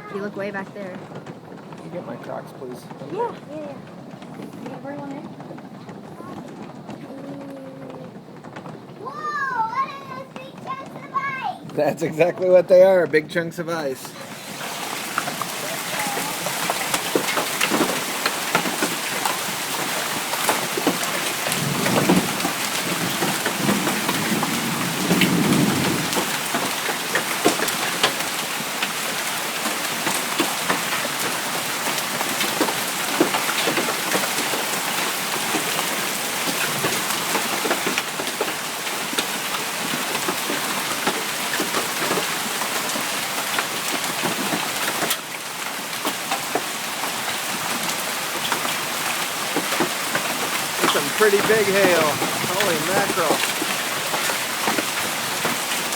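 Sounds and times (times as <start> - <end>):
hailstones ticking: 0.0 - 55.9
heavy rain and hail pelting: 0.0 - 55.9.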